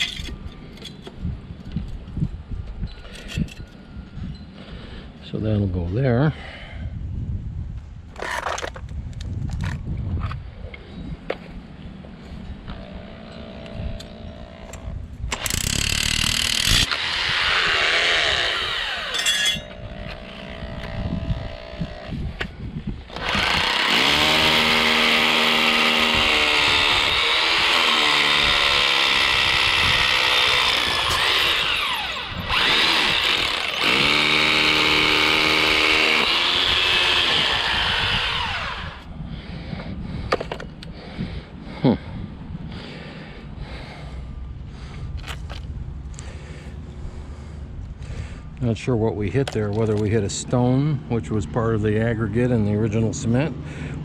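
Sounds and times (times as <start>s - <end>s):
rotary hammer drilling into concrete: 8.1s - 8.8s, 12.8s - 22.2s, 23.1s - 39.1s.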